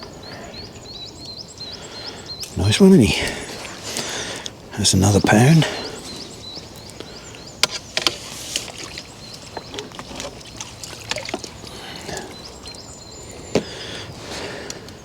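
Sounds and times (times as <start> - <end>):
water trickling: 2.2 - 13.5.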